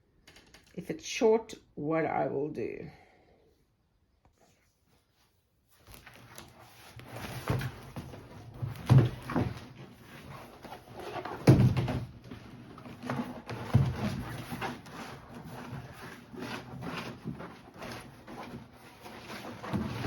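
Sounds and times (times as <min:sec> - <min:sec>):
plastic liner rustling: 0:05.7 - 0:20.0.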